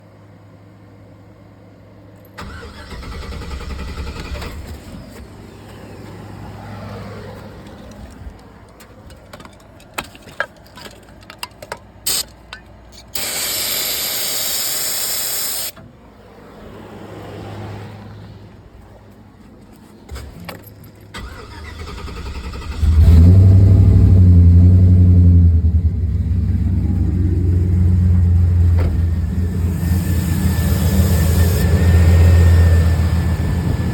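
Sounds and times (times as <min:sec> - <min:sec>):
engine noise: 0:00.9 - 0:18.7, 0:20.1 - 0:33.9
truck engine cranking: 0:02.4 - 0:06.4, 0:20.1 - 0:33.9
aerosol can spraying: 0:13.0 - 0:15.7.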